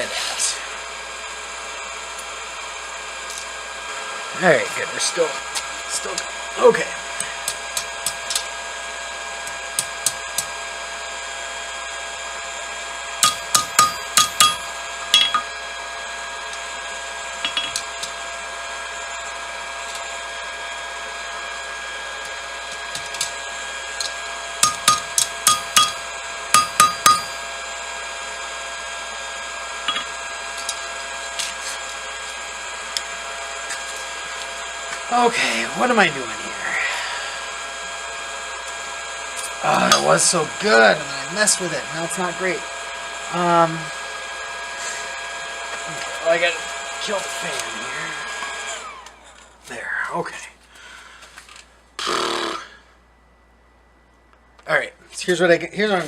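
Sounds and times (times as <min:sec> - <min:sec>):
fan humming: 0:00.0 - 0:56.0
hammer striking steel on anvil: 0:13.2 - 0:15.6, 0:17.4 - 0:18.0, 0:24.6 - 0:27.5, 0:29.9 - 0:30.2, 0:39.9 - 0:40.1.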